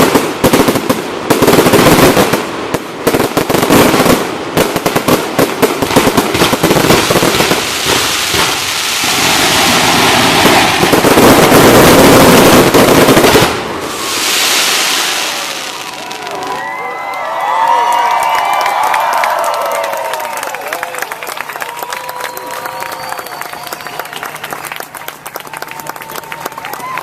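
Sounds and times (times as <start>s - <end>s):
fireworks bangs and crackling: 0.0s - 16.9s
crowd cheering: 14.9s - 27.0s.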